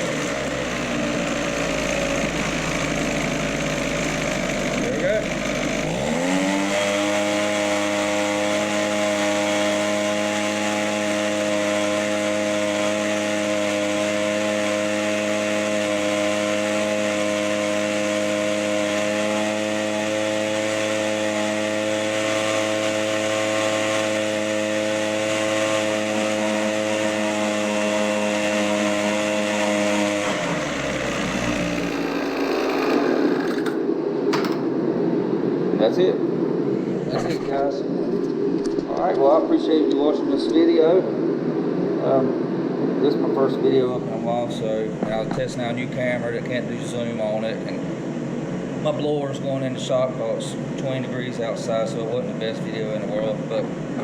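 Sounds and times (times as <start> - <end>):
leaf blower engine running: 0.0 - 34.6, 43.8 - 54.0
sharp knocks: 31.1 - 34.7.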